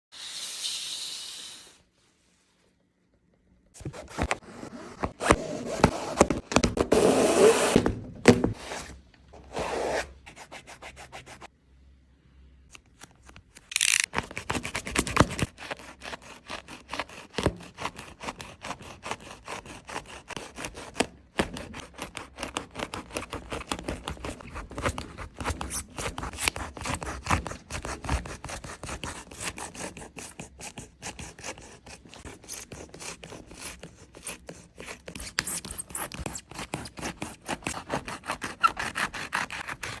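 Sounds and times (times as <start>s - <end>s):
shoe being cut and sawed: 13.8s - 40.0s.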